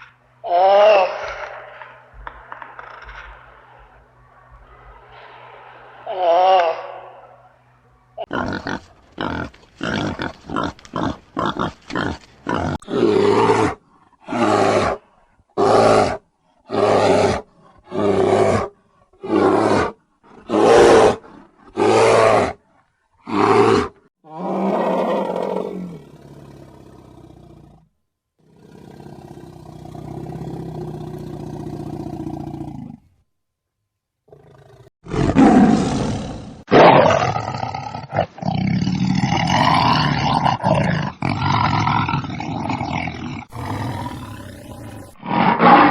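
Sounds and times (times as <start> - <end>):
animal calling: 39.0 - 45.9.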